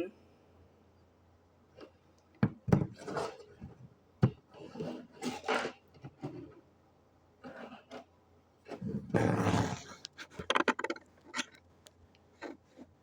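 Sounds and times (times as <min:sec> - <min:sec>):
scraping and rubbing noises: 0:07.4 - 0:10.7.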